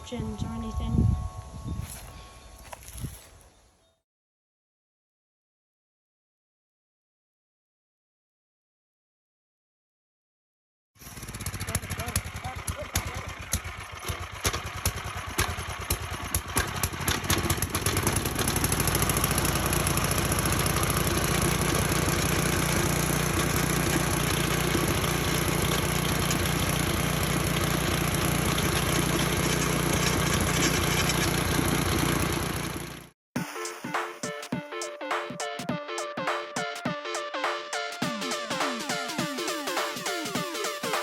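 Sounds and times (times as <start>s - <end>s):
wood chipper engine running: 11.0s - 33.2s.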